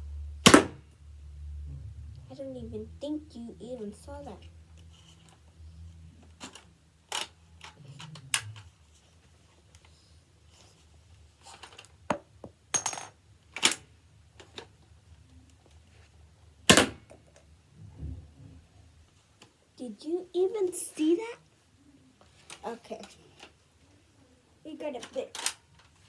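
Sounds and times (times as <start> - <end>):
toy rifle firing snap: 0.5 - 0.8, 16.7 - 17.0
plastic toy rifle clicks: 25.0 - 25.6.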